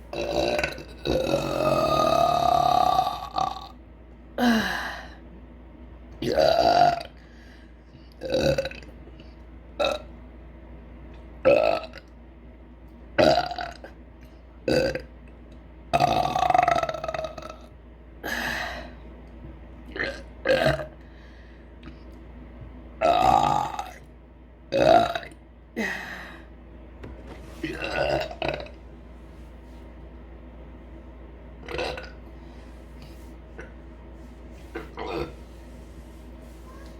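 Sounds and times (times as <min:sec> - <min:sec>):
woman burping: 0:00.1 - 0:03.7, 0:24.8 - 0:26.0.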